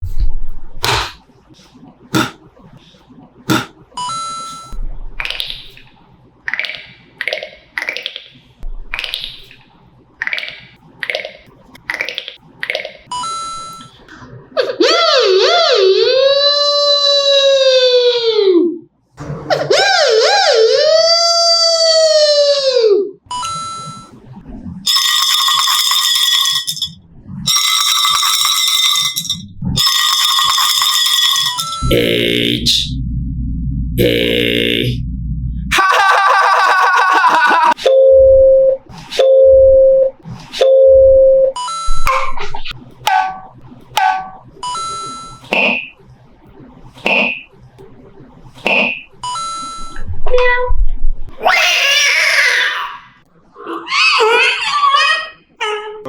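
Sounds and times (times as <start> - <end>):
beatbox breathy swooshes: 0.8 - 3.8
beatbox mouth clicks: 2.1 - 2.4, 3.5 - 3.8, 5.2 - 8.3, 8.9 - 13.0
beatbox buzzy beep: 29.8 - 32.9, 44.0 - 46.0
short low rumble: 31.8 - 35.8.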